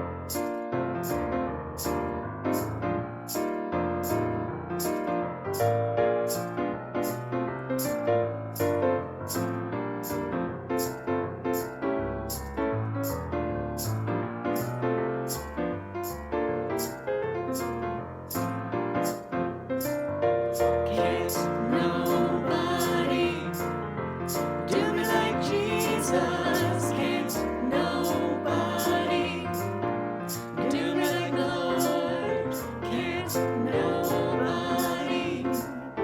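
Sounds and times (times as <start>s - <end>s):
song with singing voices: 20.6s - 36.0s.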